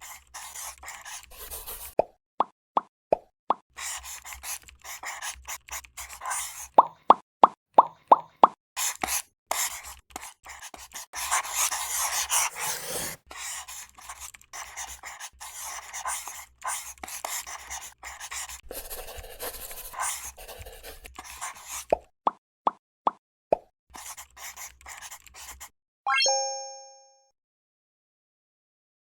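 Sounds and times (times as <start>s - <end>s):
marker tip scratching plastic: 0.0s - 2.0s, 3.8s - 7.0s, 8.8s - 22.1s, 24.0s - 25.7s.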